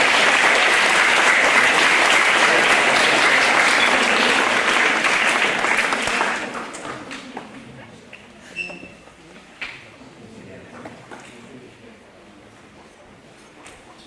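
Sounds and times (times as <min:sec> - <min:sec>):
audience applauding: 0:00.0 - 0:07.3.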